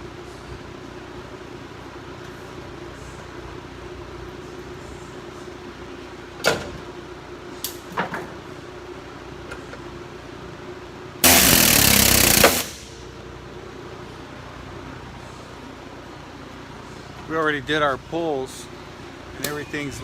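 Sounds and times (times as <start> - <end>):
loud hissing rush: 11.2 - 13.1.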